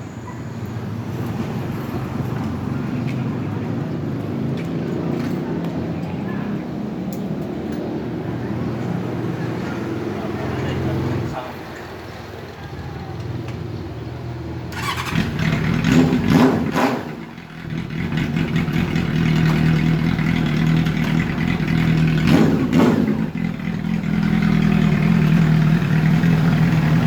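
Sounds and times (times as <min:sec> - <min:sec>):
motorcycle engine idling: 0:12.0 - 0:27.0
motorcycle engine throttle blips: 0:14.7 - 0:27.0.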